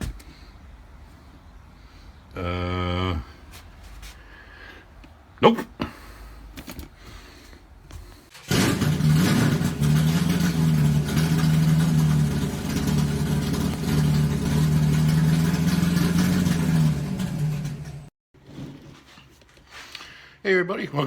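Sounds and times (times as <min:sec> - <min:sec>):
vehicle engine running: 0:08.3 - 0:18.1.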